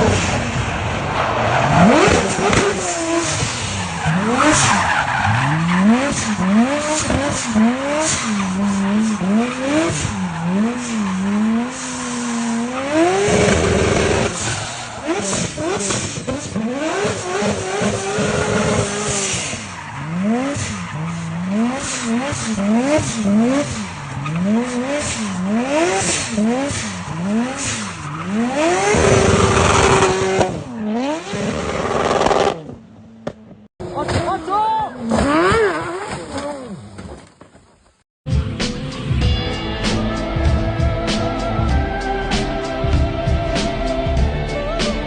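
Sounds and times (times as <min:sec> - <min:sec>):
racing car engine revving: 0:01.5 - 0:32.8.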